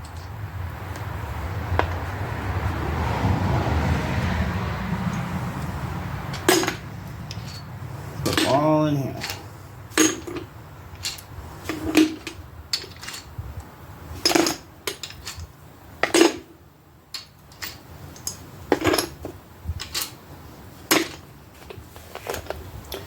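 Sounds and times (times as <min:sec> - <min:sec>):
metal parts clanking into container: 0:11.0 - 0:13.3.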